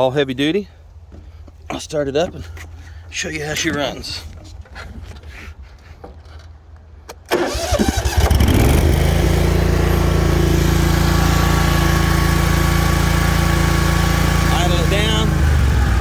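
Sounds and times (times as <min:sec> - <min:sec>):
starter cranking: 0:07.3 - 0:09.0
mower engine running: 0:07.3 - 0:16.0.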